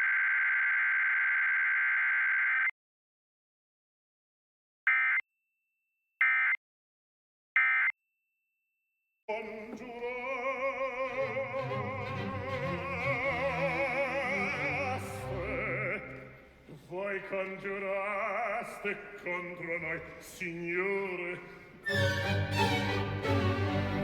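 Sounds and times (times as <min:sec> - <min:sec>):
operatic singing with orchestra: 0:09.3 - 0:24.0.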